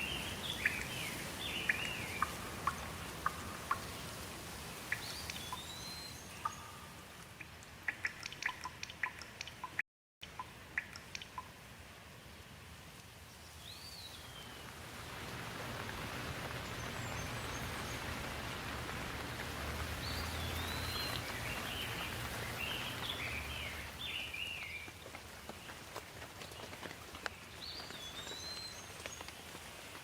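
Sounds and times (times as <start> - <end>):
bird chirping: 0.0 - 4.0, 4.9 - 7.2, 20.0 - 24.9
steady rain falling: 0.0 - 30.0.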